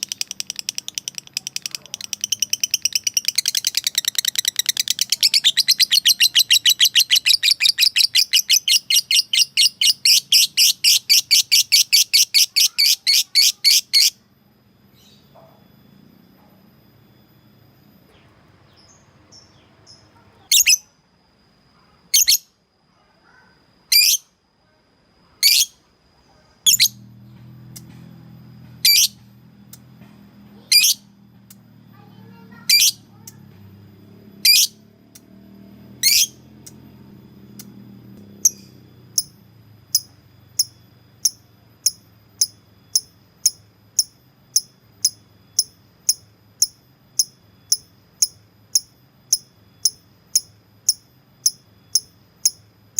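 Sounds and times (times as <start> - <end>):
lovebird calling: 0.0 - 14.2, 26.6 - 27.0, 28.6 - 29.8, 30.6 - 31.2, 34.4 - 34.8, 36.0 - 36.8.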